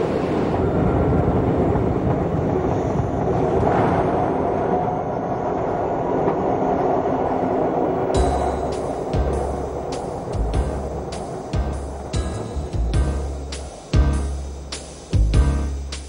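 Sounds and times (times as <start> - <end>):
train wheels rumbling on rails: 0.0 - 16.0
music: 8.2 - 16.0.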